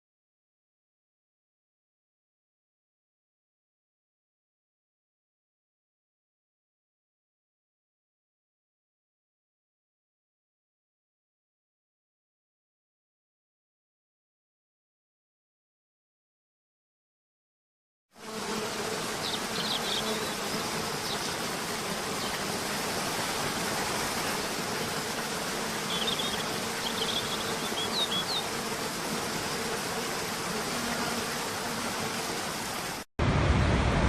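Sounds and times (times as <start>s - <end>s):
faint steady buzz: 18.2s - 33.0s
rushing falling water: 21.3s - 26.6s, 31.5s - 34.0s
high bird chirps: 25.9s - 28.4s.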